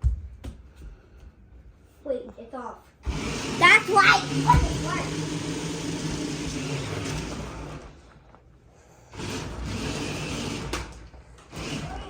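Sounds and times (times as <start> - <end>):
toy car electric motor whirring: 3.0 - 7.9, 9.1 - 12.0.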